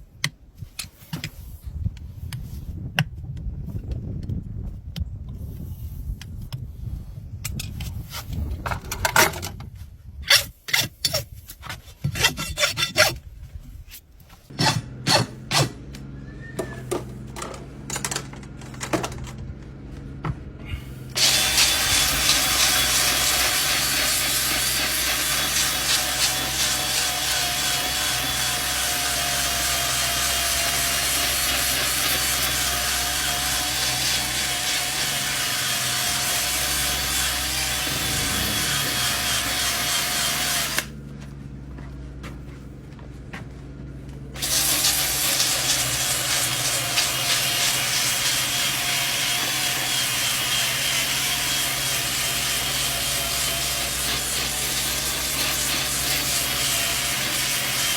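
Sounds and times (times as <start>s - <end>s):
tools scraping a hoof: 0.6s - 2.7s, 7.4s - 19.5s, 20.6s - 41.0s, 44.4s - 57.9s
power tool against hoof: 14.5s - 19.6s, 20.6s - 41.0s, 44.4s - 57.9s.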